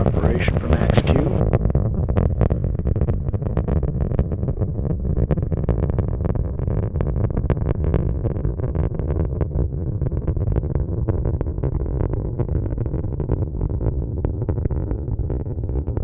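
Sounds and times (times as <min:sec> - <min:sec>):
rocket engine rumbling and crackling: 0:00.0 - 0:16.0.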